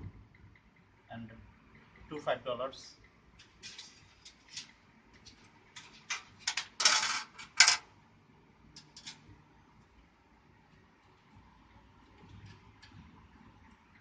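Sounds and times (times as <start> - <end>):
small hard parts clicking and clattering: 3.0 - 7.9, 8.7 - 9.4.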